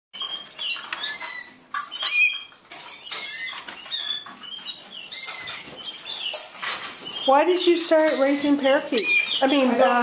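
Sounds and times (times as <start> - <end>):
canaries chirping: 0.2 - 10.0.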